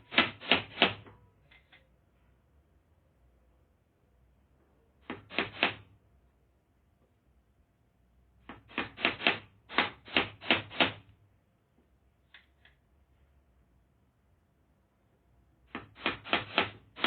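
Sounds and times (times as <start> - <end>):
hammer driving nails into wood: 0.0 - 1.1, 5.0 - 5.9, 8.5 - 11.1, 15.7 - 17.0.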